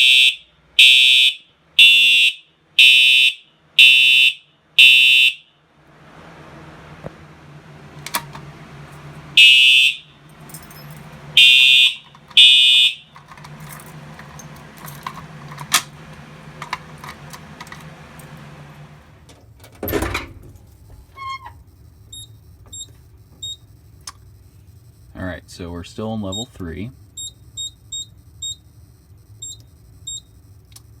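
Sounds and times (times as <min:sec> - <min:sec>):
fire alarm horn blasts: 0:00.0 - 0:05.7, 0:09.3 - 0:10.4, 0:11.1 - 0:19.1, 0:21.1 - 0:22.6.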